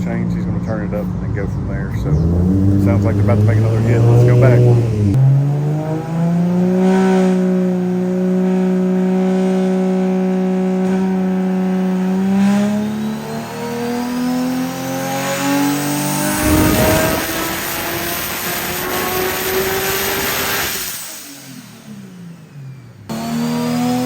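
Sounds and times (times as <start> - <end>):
car engine revving on dyno: 1.0 - 24.0
turbo whine: 15.6 - 23.2
burst of rushing noise: 16.0 - 21.8.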